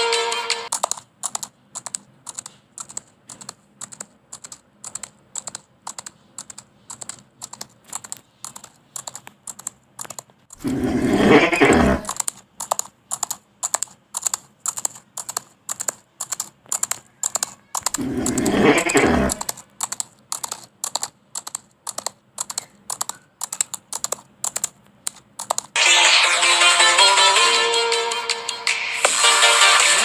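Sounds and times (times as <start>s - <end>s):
horse whinnying: 10.6s - 12.1s, 17.8s - 19.5s.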